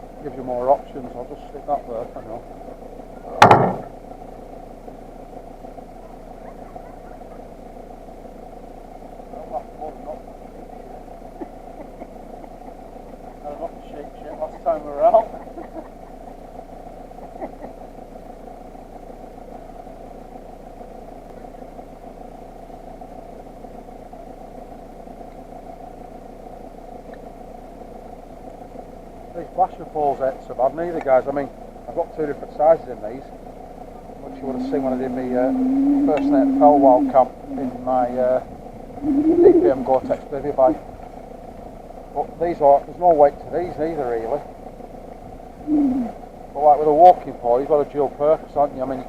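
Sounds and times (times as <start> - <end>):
low background rumble: 0.0 - 49.0
sharp double knock with rattle: 3.4 - 3.9
faint ticks: 25.2 - 25.5, 27.0 - 27.3, 36.1 - 36.4
mechanical drone: 34.2 - 41.0.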